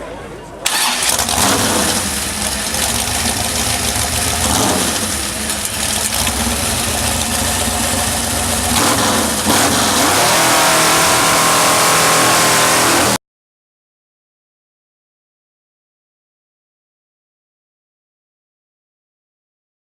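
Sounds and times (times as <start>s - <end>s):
chainsaw engine running: 0.7s - 13.2s.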